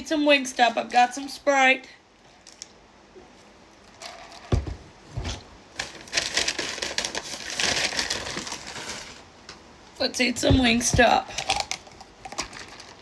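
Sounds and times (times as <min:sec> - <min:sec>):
packaging crinkling: 0:05.7 - 0:09.3, 0:11.3 - 0:13.0.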